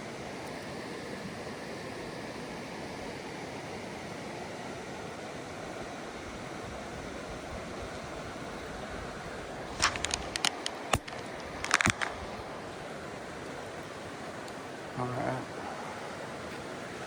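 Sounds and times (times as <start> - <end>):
creek rushing: 4.9 - 17.0
sharp clicks and knocks: 9.8 - 12.2.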